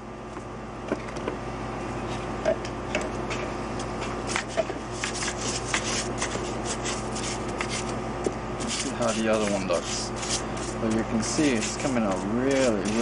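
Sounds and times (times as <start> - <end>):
low steady hum: 0.0 - 13.0
brush scrubbing metal: 4.3 - 8.0, 8.6 - 13.0.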